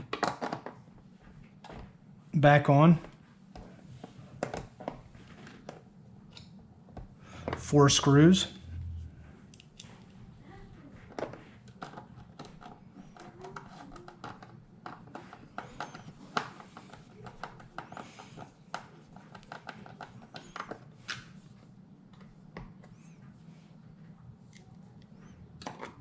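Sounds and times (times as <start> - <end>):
steady low hum: 0.8 - 13.4.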